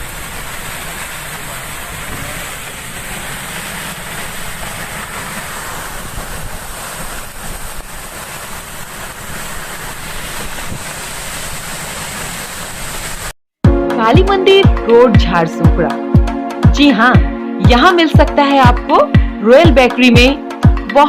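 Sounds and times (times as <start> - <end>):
heavy rain: 0.0 - 13.4.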